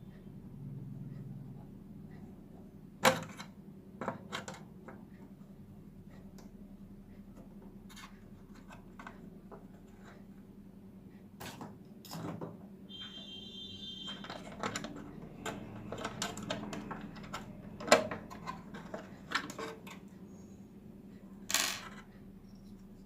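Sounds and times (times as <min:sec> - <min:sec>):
faint steady hum: 0:00.0 - 0:23.0
brief high tone: 0:12.9 - 0:14.3
small parts and tools clicking: 0:14.0 - 0:20.1, 0:21.5 - 0:22.9.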